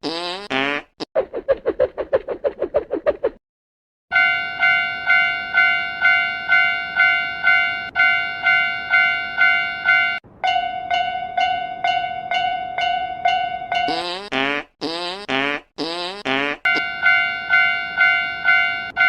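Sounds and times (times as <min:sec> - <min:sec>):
railroad crossing warning bell: 0:04.1 - 0:13.9, 0:16.7 - 0:19.0.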